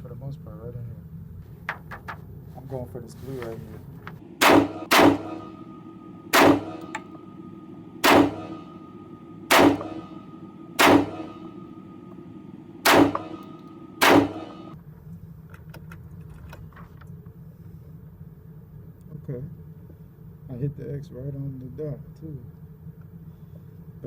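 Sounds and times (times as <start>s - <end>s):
rifle shots with ringing tail: 4.3s - 14.8s.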